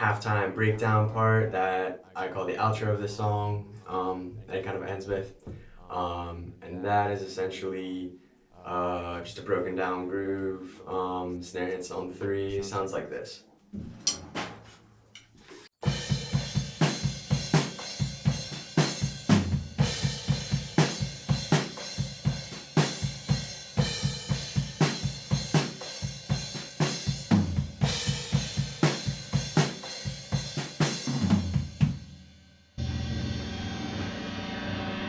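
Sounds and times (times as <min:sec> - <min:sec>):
drum kit playing a groove: 0:15.8 - 0:32.3.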